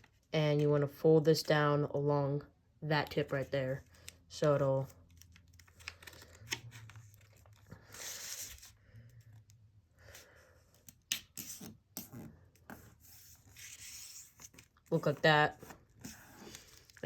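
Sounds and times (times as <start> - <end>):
paper rustling and crackling: 4.0 - 8.8, 12.8 - 17.0.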